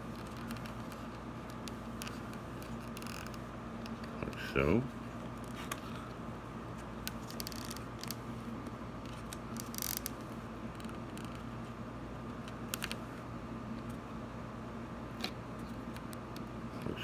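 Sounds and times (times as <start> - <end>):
small clicks: 9.1 - 10.2.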